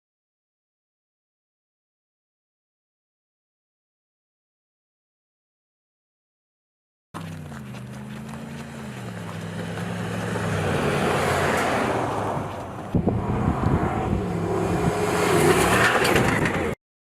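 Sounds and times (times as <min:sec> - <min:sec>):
truck engine running: 0:07.2 - 0:16.8
tyre and terrain noise: 0:07.2 - 0:16.8.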